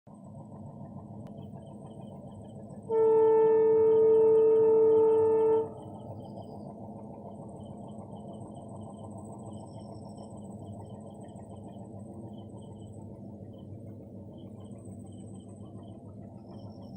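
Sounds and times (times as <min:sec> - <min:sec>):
low steady rumble: 0:00.1 - 0:16.9
train horn blast: 0:02.8 - 0:06.0.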